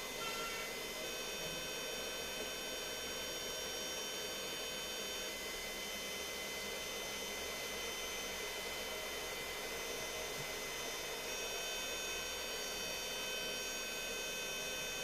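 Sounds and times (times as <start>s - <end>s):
high-pitched whining tones: 0.1s - 0.8s.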